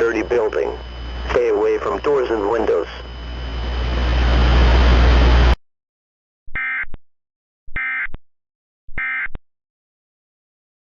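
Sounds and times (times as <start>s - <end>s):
screechy digital data tones: 0.0s - 3.8s
loud static with low hum: 0.0s - 5.6s.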